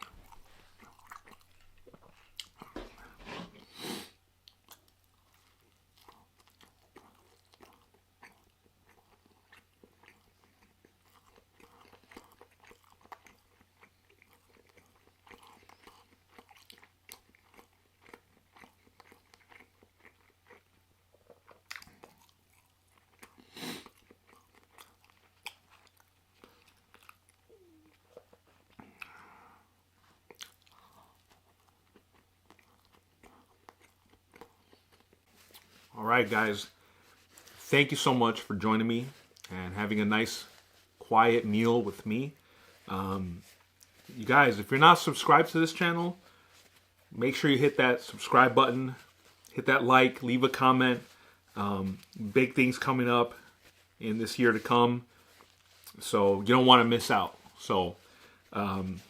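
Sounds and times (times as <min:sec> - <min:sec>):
chewing and mouth smacks: 0:00.0 - 0:03.2, 0:04.4 - 0:29.2, 0:30.0 - 0:36.0, 0:39.1 - 0:39.6, 0:55.1 - 0:56.0.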